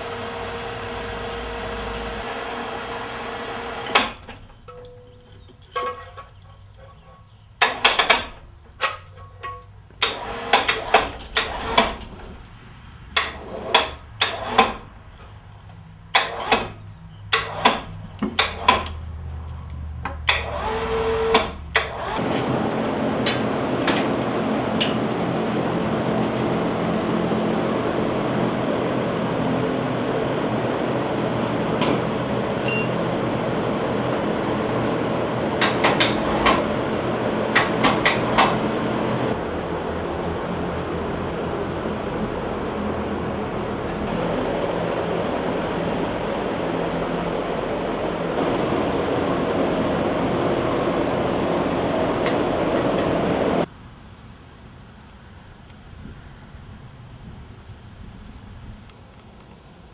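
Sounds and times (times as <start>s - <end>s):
steady machine noise: 0.0s - 5.4s, 20.3s - 53.7s
metal tools knocking on engine: 3.9s - 12.5s, 13.1s - 22.4s, 31.2s - 39.4s.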